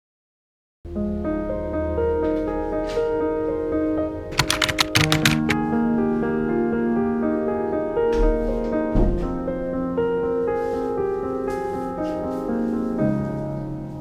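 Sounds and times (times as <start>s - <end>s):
quick run of sharp clicks: 4.3s - 5.6s.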